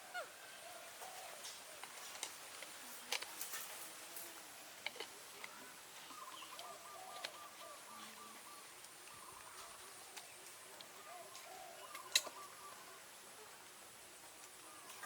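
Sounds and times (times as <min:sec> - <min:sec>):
faint chirping calls: 0:05.4 - 0:15.0.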